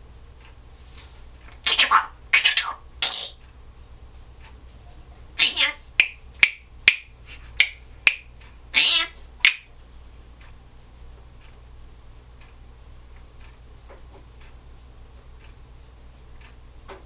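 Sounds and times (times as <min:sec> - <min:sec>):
parrot call: 0:01.6 - 0:03.4, 0:05.4 - 0:09.7
finger snap clicks: 0:06.0 - 0:08.3, 0:09.4 - 0:09.7.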